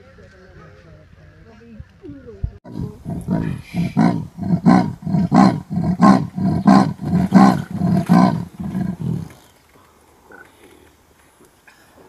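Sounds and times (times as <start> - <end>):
big cat rough low calls: 2.7 - 9.5.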